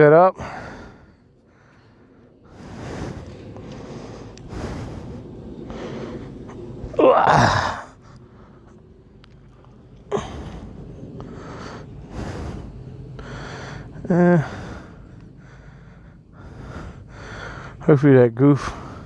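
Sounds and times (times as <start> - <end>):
man breathing into microphone: 0.4 - 6.8, 18.6 - 19.0
man grunting: 7.0 - 7.8.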